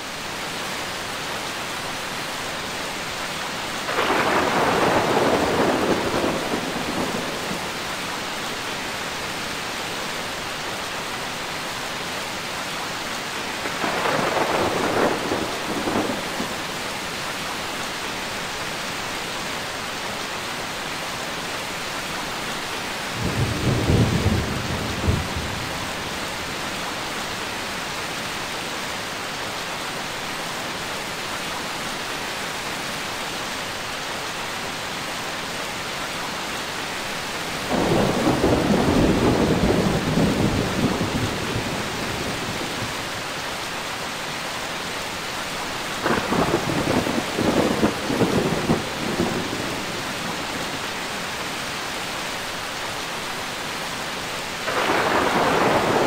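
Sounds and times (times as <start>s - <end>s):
steady rain: 0.0s - 56.0s
thunder rolling: 3.9s - 7.7s, 13.6s - 16.6s, 54.7s - 56.0s.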